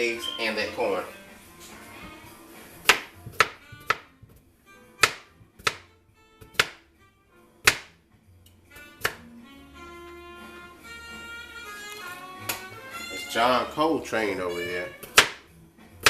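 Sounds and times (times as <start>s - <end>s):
jazz music: 0.0s - 16.0s
knife chopping on cutting board: 2.8s - 4.4s, 5.0s - 6.9s, 7.6s - 8.0s, 8.8s - 9.3s, 15.0s - 15.4s.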